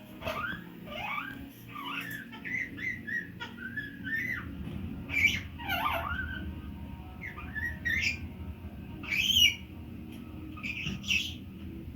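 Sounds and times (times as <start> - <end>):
parrot whistled calls: 0.2 - 6.6, 7.2 - 8.3, 9.0 - 9.8, 10.5 - 11.4.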